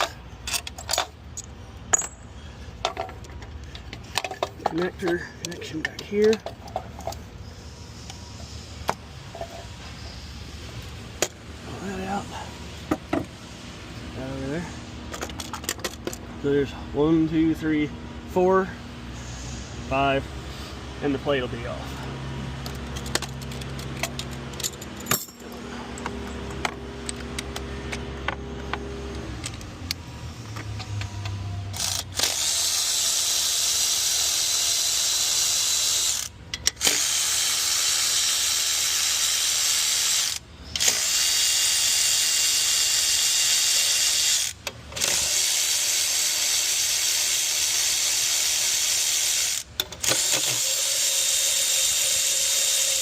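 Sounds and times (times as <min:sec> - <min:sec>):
handling noises: 0:00.0 - 0:14.1, 0:21.9 - 0:32.3
power tool spinning out bolts: 0:31.7 - 0:53.0.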